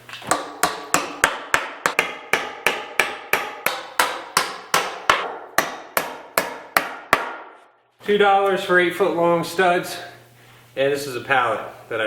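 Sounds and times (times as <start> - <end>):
hammer pounding on wood: 0.3 - 7.7.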